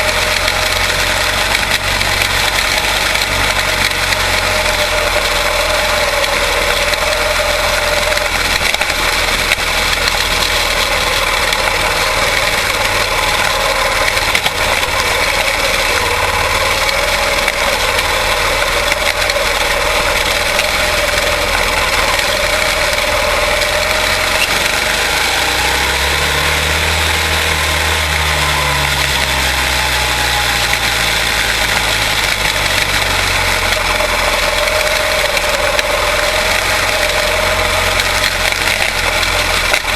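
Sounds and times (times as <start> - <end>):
passing car engine: 0.0 - 39.9
race car engines droning: 0.0 - 39.9.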